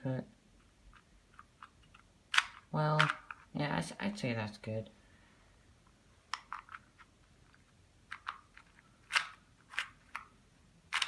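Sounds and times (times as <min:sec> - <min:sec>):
plastic puzzle cube clicking: 0:00.6 - 0:03.5, 0:06.3 - 0:11.0.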